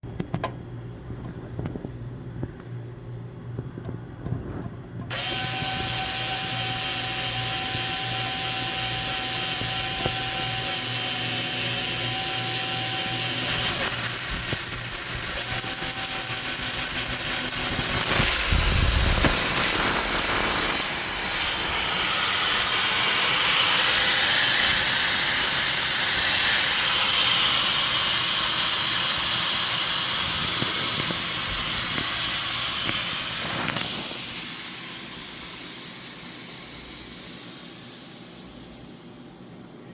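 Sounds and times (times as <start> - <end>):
pressurized gas hissing: 13.2 - 39.9.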